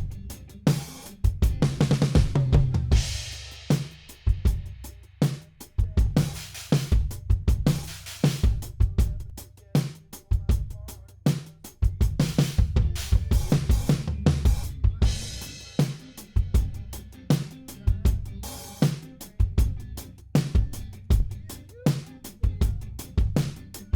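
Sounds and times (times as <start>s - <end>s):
low bass: 0.0s - 0.7s, 1.3s - 3.7s, 11.9s - 15.8s, 16.4s - 18.8s, 19.4s - 21.8s, 22.4s - 23.9s
drum kit groove: 0.0s - 23.9s.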